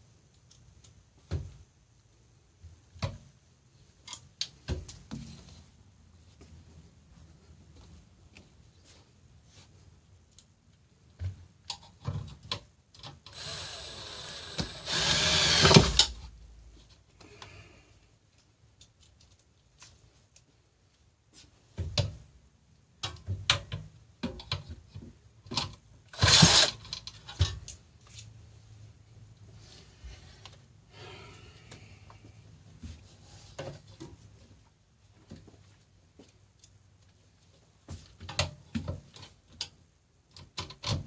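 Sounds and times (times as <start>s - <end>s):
power drill driving screws: 13.3s - 16.1s, 26.1s - 26.8s
clicks and knocks of parts handled: 18.3s - 20.6s.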